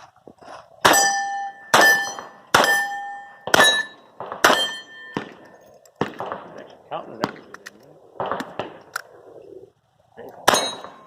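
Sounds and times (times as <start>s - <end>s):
steel target ringing: 0.8s - 5.3s, 10.5s - 11.0s.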